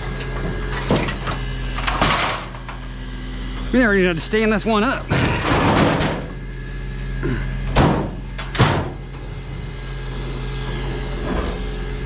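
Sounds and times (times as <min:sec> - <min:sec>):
engine idling: 0:00.0 - 0:12.0
scrap metal banging: 0:05.1 - 0:06.4.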